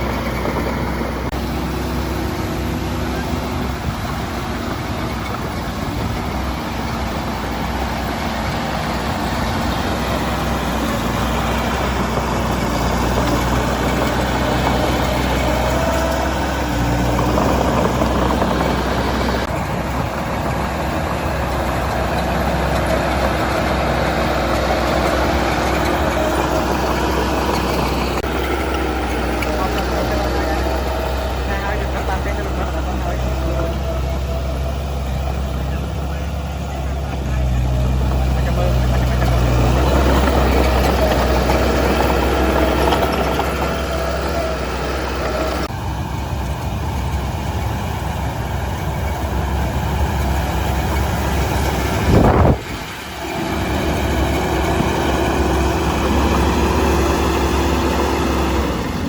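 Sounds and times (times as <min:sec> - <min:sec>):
heavy diesel engine running: 0:00.0 - 0:59.0.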